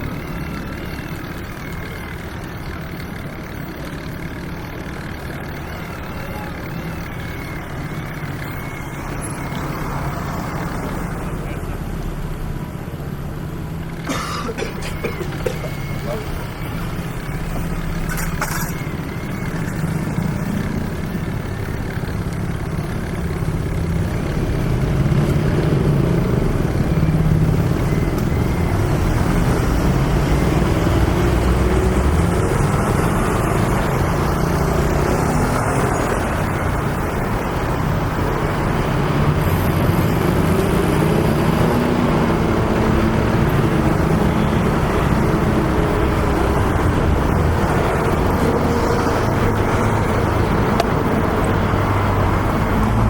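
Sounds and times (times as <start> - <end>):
road traffic: 0.0 - 53.0.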